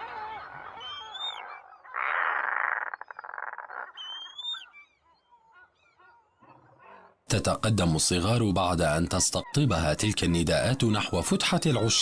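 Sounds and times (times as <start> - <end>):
bird harsh rasping call: 0.8 - 6.2.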